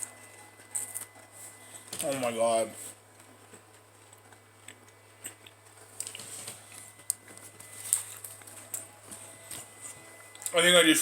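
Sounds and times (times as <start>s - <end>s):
person chewing crunchy wafer: 4.0s - 6.9s.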